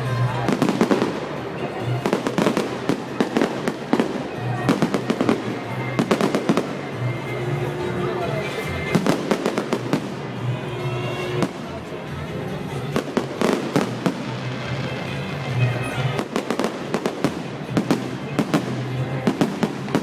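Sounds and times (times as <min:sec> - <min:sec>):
fireworks bangs and crackles: 0:00.0 - 0:20.0
music playing: 0:00.0 - 0:20.0.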